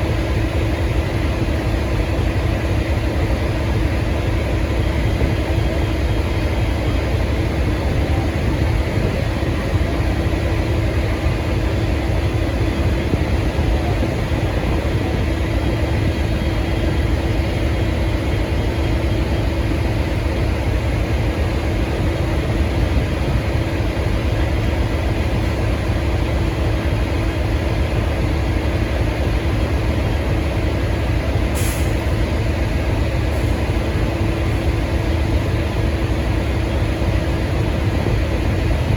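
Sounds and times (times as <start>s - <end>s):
diesel locomotive engine rumble: 0.0s - 38.9s.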